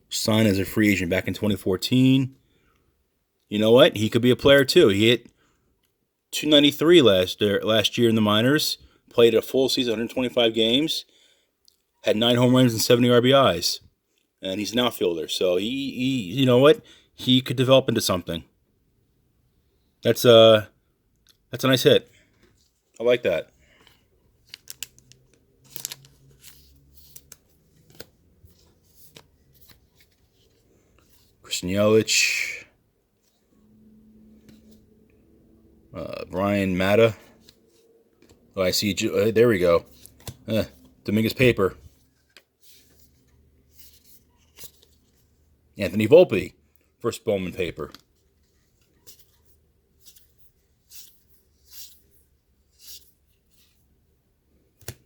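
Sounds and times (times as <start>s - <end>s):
trading cards sliding and tapping: 25.7s - 31.3s.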